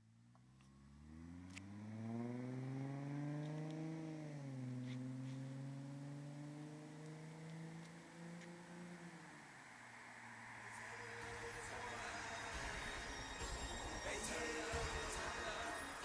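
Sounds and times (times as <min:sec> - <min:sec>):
car exhaust revving: 0:00.7 - 0:11.8.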